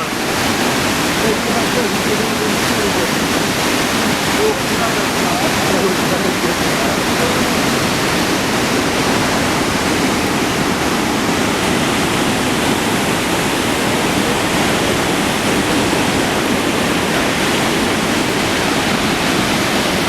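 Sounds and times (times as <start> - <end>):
waterfall roaring: 0.0 - 20.0.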